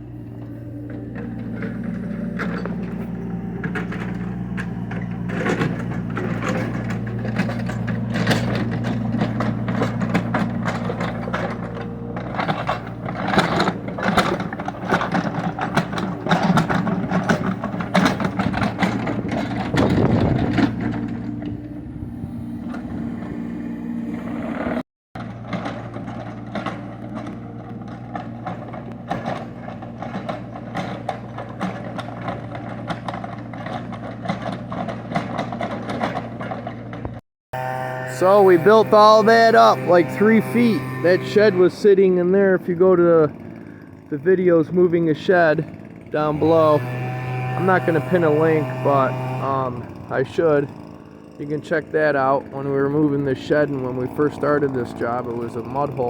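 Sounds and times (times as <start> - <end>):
diesel engine running: 0.0 - 56.0
bucket scraping soil and stone: 38.1 - 43.3, 46.2 - 50.7.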